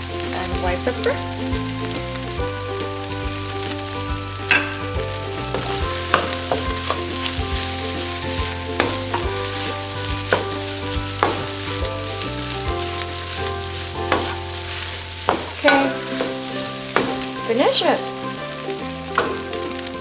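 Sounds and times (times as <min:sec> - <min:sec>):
rice sizzling in a pan: 0:00.0 - 0:20.0
utensil scraping and clacking pan: 0:04.4 - 0:20.0.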